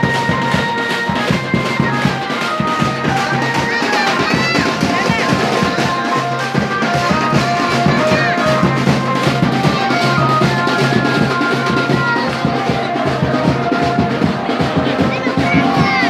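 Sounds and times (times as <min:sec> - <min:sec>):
fast drumming: 0:00.0 - 0:16.0
melody of short held notes: 0:00.0 - 0:16.0.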